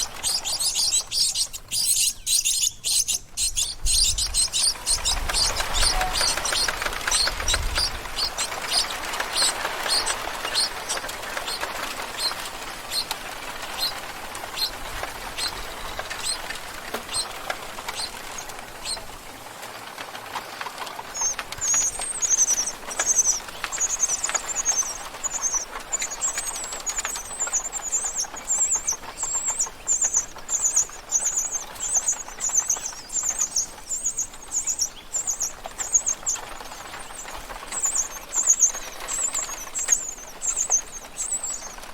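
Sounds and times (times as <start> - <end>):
birds chirping: 0.0 - 41.9.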